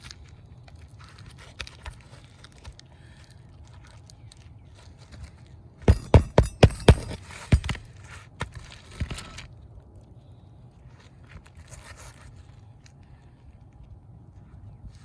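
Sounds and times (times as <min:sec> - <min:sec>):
hammer striking roofing nails: 0:05.9 - 0:07.8.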